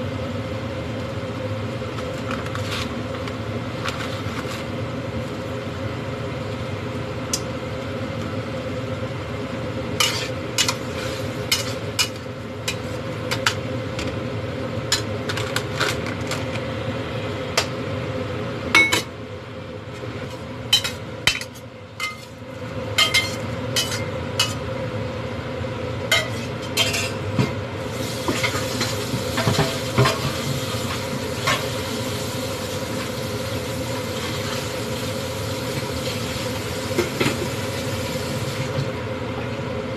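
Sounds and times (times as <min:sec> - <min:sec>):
steady mechanical hum: 0:00.0 - 0:39.9
food sizzling: 0:10.0 - 0:13.2, 0:27.8 - 0:38.8.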